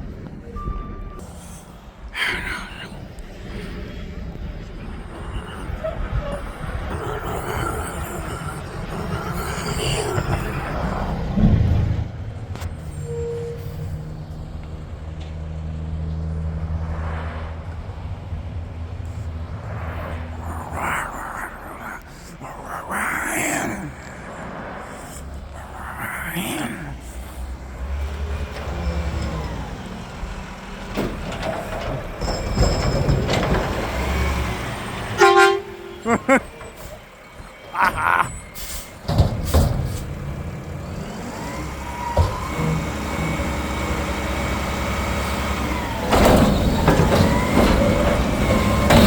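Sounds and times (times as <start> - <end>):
garbage truck diesel engine humming: 27.0 - 49.0.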